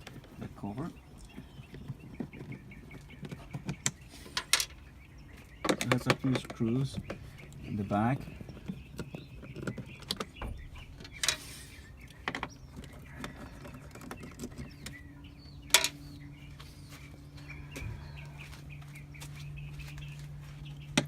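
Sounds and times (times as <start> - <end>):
low hum: 10.2 - 21.0.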